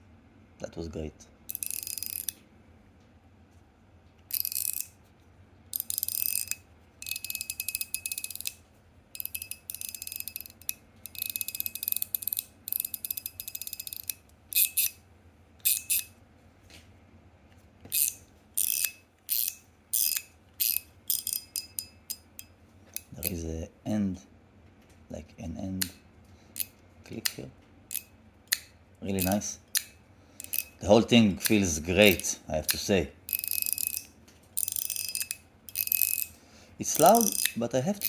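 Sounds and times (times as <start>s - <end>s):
fidget slider clicking: 1.5s - 2.4s, 4.3s - 4.9s, 5.8s - 8.6s, 9.2s - 15.0s, 15.6s - 16.1s, 17.9s - 23.4s, 26.6s - 30.8s, 31.4s - 36.3s, 36.9s - 37.6s.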